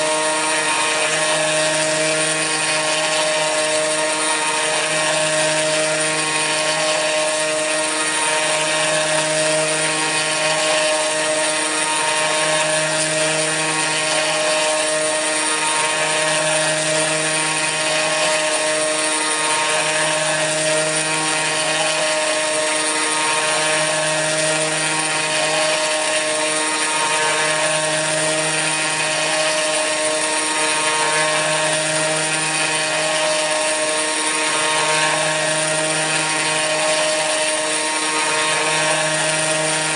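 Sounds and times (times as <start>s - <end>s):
router spindle whining: 0.0s - 39.9s.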